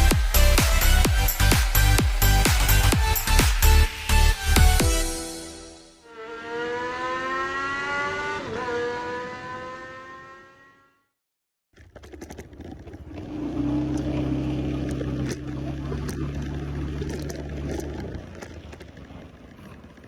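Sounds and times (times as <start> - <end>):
motorcycle engine running: 0.0 - 5.2, 13.3 - 20.0
road and wind noise: 6.1 - 10.8, 12.7 - 20.0.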